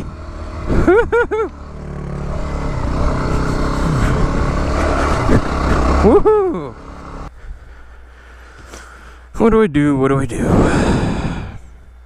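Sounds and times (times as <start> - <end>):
motorcycle engine under throttle: 0.0 - 7.3.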